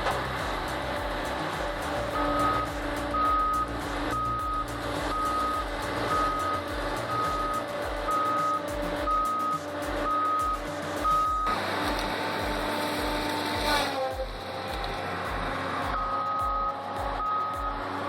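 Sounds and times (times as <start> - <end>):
diesel engine running: 0.0 - 18.0
reversing alarm beeping: 2.1 - 11.6, 15.9 - 17.8.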